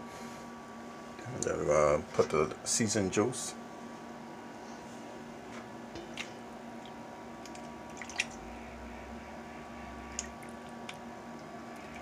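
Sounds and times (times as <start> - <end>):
steady background hum: 0.0 - 12.0
wet squishes of raw chicken: 6.0 - 8.9, 9.8 - 12.0.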